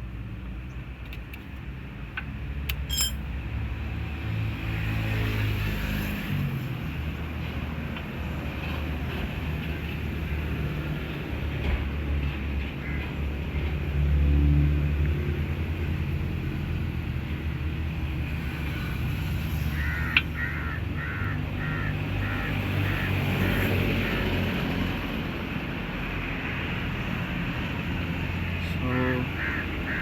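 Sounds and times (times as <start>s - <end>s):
sharp click: 2.7s - 3.2s.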